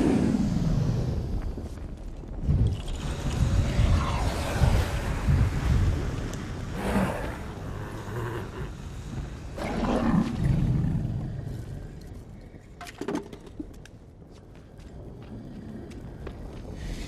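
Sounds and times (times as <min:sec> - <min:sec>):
dragon roaring: 0:06.7 - 0:08.8.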